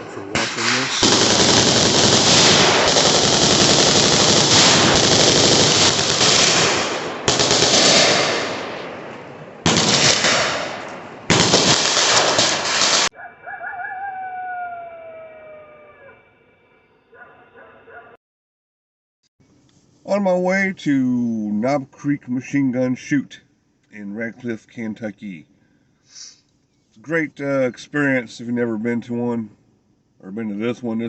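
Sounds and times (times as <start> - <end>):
rapid machine-gun fire: 0.4 - 8.9, 9.6 - 13.1.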